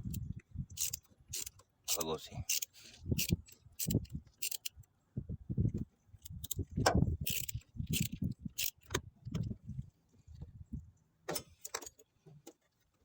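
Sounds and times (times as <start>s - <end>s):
metal tools clinking and scraping: 0.8s - 4.7s.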